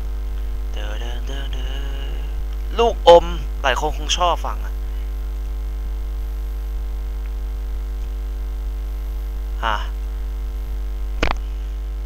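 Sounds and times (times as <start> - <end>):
electrical mains hum: 0.0 - 12.0.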